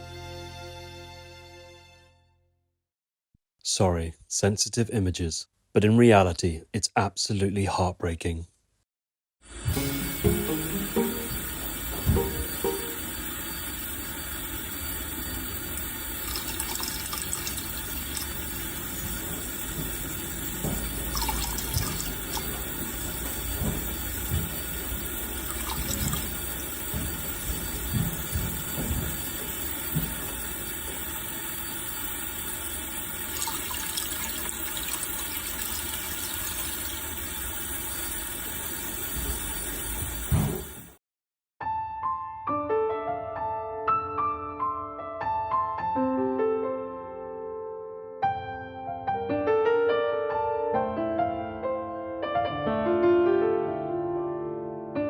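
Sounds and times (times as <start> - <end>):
rushing water: 20.5 - 23.2, 25.0 - 26.9, 33.2 - 38.1.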